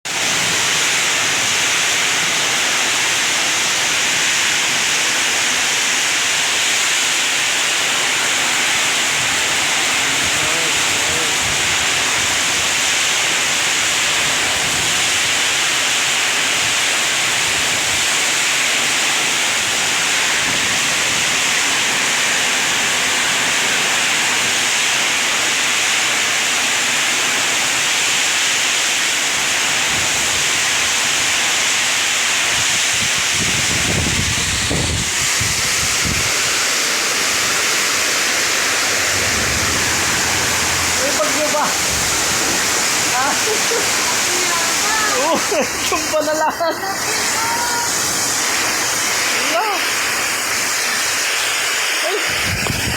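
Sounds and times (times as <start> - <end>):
heavy rain pouring: 0.0 - 52.9
strong wind: 7.7 - 24.7, 29.6 - 31.4, 32.3 - 52.9
low rumbles: 38.0 - 48.2.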